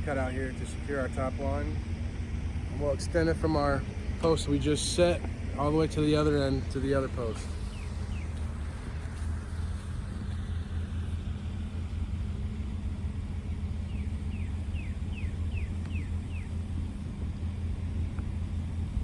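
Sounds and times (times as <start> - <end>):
engine rumble idling: 0.0 - 19.0.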